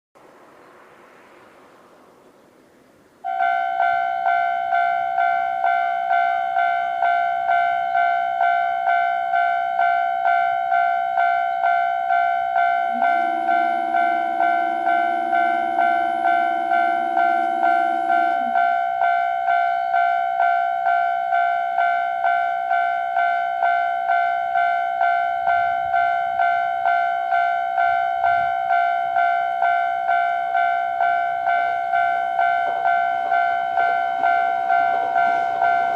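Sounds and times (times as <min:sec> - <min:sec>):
train horn blast: 0:03.3 - 0:06.1, 0:12.6 - 0:19.4, 0:31.4 - 0:35.9
level crossing two-tone warning bell: 0:03.3 - 0:35.9.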